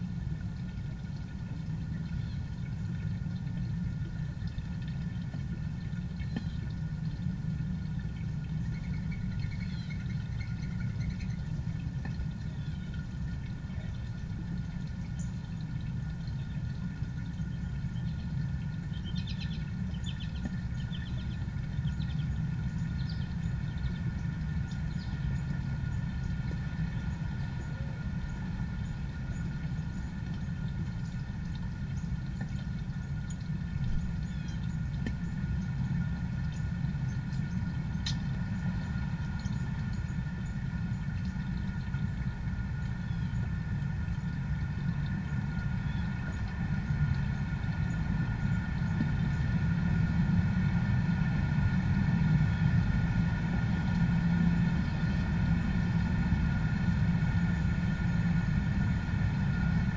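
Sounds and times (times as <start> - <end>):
faint steady hum: 0.0 - 59.9
steady low rumble: 0.0 - 59.9
small birds chirping: 8.0 - 11.6, 16.2 - 41.6.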